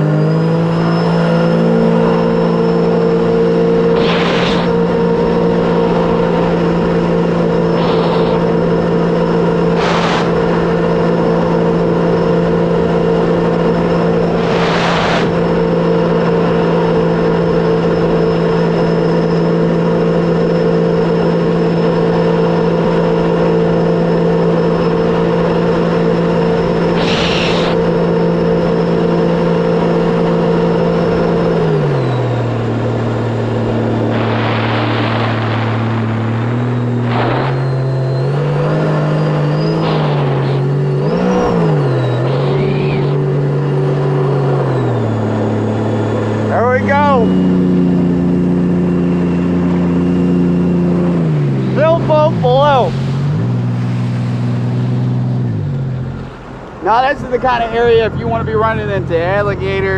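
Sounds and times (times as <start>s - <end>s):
jet ski engine running: 0.0s - 59.9s
brief rushing sounds: 3.9s - 5.0s, 7.7s - 8.6s, 9.7s - 10.5s, 14.3s - 15.5s, 27.0s - 27.8s.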